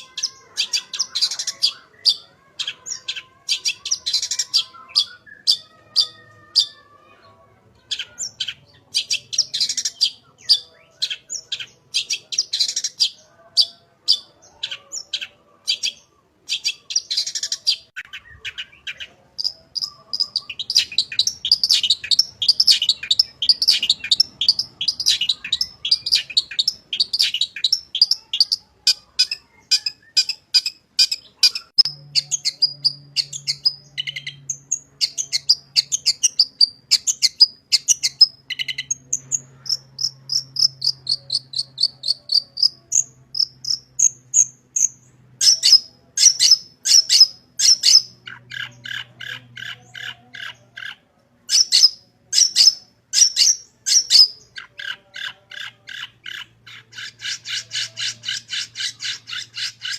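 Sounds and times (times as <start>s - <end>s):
shrike singing: 0.0s - 7.1s, 7.8s - 59.9s.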